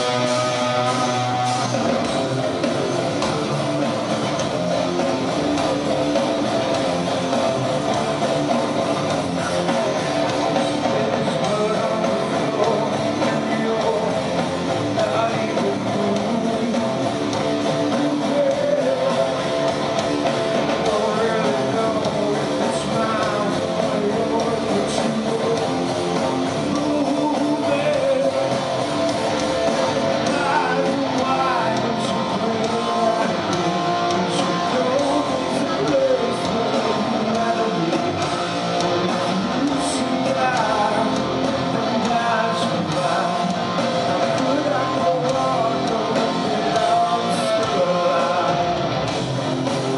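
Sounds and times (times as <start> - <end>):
rock band playing live: 0.0 - 49.9.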